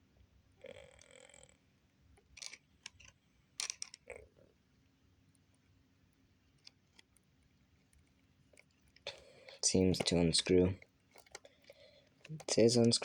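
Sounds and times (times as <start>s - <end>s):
small plastic parts clicking: 2.2s - 4.2s, 11.1s - 13.0s.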